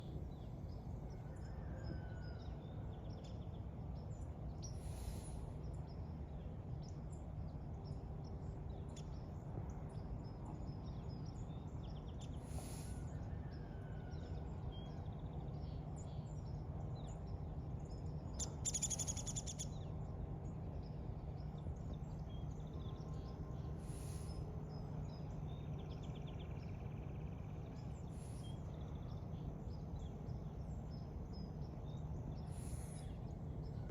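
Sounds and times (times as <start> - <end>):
small birds chirping: 17.4 - 19.9, 20.8 - 33.9
steady low rumble: 19.7 - 33.9.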